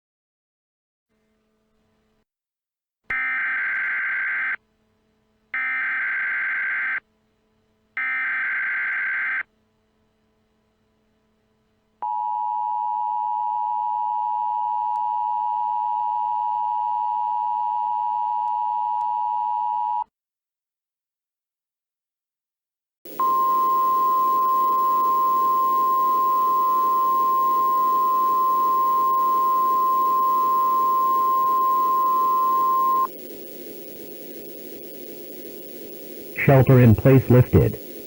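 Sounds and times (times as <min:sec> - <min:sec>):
two-tone attention signal: 0:23.2 - 0:33.1.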